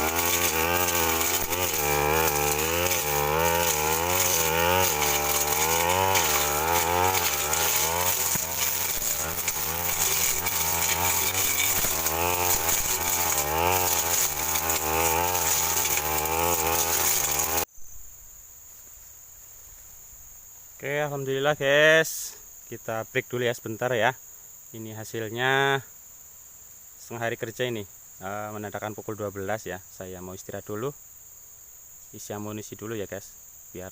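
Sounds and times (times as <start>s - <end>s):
brush cutter cutting scrub: 0.0s - 17.7s.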